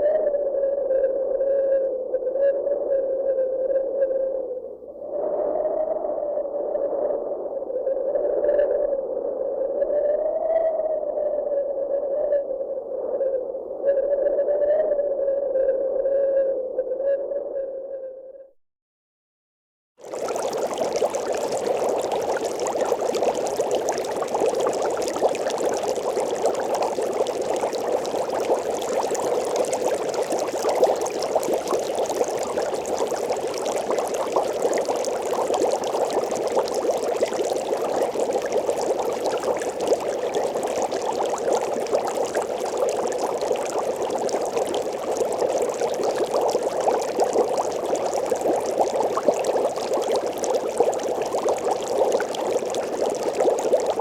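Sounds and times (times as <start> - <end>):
water boiling: 20.0 - 54.0.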